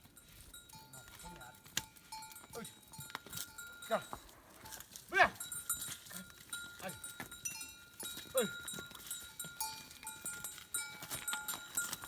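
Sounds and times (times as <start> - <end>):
animal bells jingling: 0.0 - 12.0.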